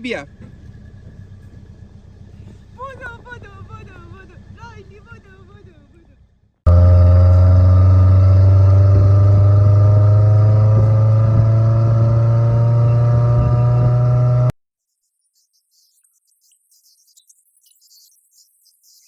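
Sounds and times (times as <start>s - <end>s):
vehicle engine running: 0.0s - 5.9s, 6.7s - 14.5s.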